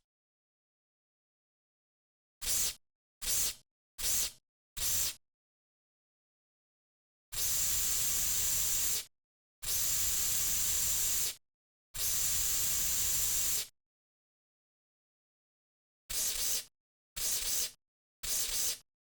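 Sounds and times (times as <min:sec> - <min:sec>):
aerosol can spraying: 0:16.2 - 0:18.8.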